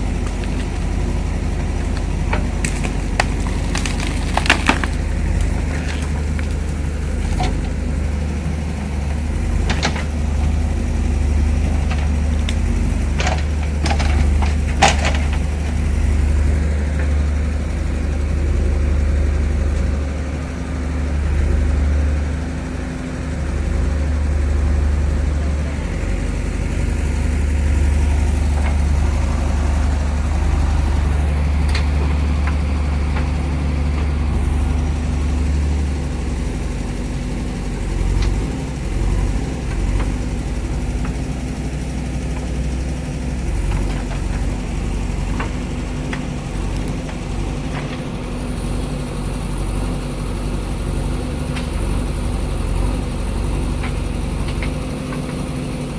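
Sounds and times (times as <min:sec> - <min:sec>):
diesel engine running: 0:00.0 - 0:55.9
sharp cracks: 0:01.9 - 0:06.8.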